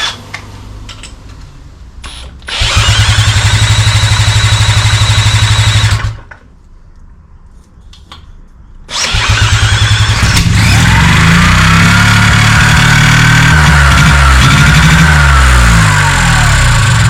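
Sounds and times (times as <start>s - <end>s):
drill cranking engine: 2.5s - 6.2s, 8.9s - 17.0s
small engine running: 2.5s - 6.2s, 8.9s - 17.0s.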